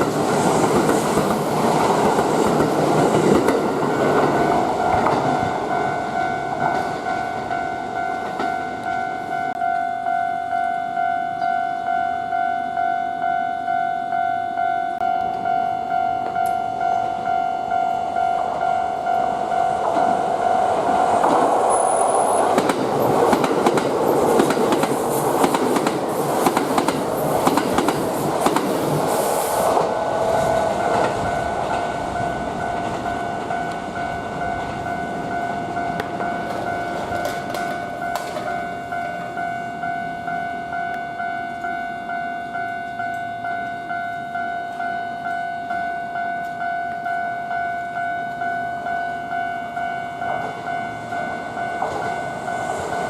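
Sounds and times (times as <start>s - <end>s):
train wheels clicking over rail joints: 0.0s - 5.8s, 19.2s - 39.3s
level crossing bell ringing: 3.7s - 22.1s.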